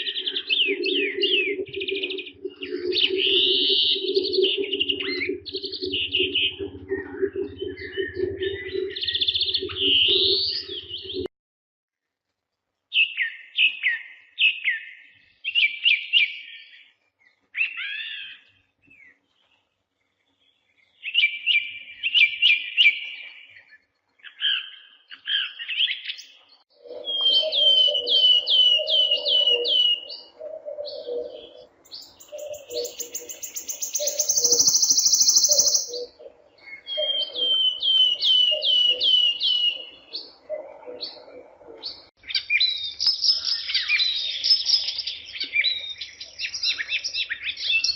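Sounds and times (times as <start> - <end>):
birds chirping and trilling: 0.0 - 11.3, 12.9 - 47.9
lower bird call: 26.7 - 42.1.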